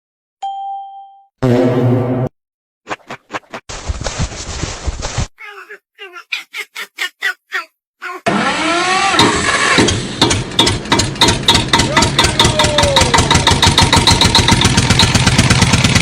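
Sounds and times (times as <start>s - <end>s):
engine starting and running: 8.3s - 16.0s.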